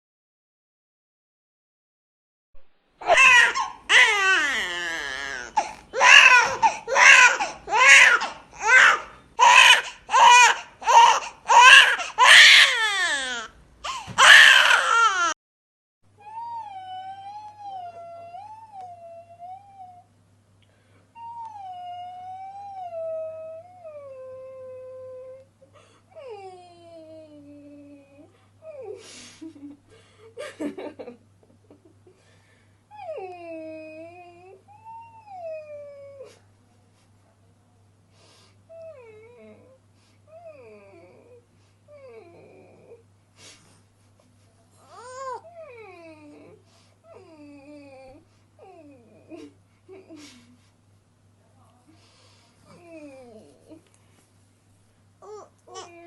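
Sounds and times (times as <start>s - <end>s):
baby crying: 3.0s - 15.4s, 44.9s - 45.5s, 55.2s - 56.0s.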